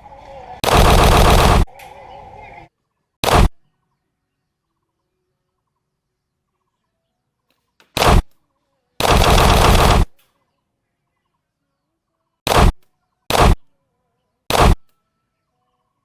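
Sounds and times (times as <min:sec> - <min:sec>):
automatic gunfire bursts: 0:00.6 - 0:01.7, 0:03.2 - 0:03.6, 0:08.0 - 0:08.3, 0:09.0 - 0:10.2, 0:12.5 - 0:13.7, 0:14.5 - 0:14.9.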